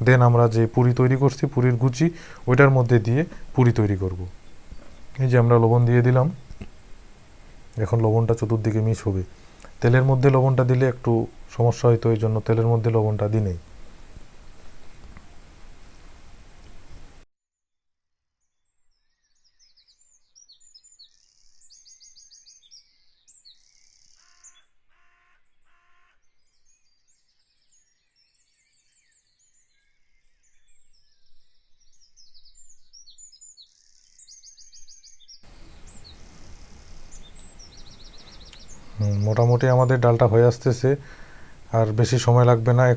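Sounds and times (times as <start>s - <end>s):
lower bird call: 0.0s - 17.2s, 35.5s - 42.9s
small birds chirping and trilling: 0.0s - 17.2s, 26.6s - 42.9s.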